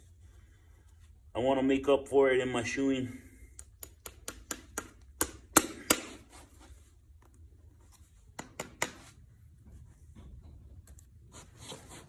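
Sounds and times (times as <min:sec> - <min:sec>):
hammer tapping nails: 0:03.6 - 0:06.2, 0:08.3 - 0:09.1.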